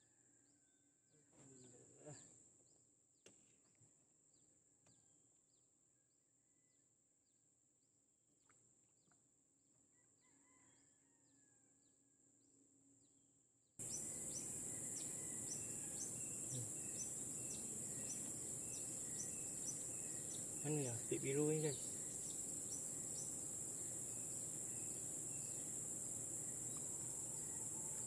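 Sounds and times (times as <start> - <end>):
insect chorus buzzing and chirping: 13.8 - 28.0.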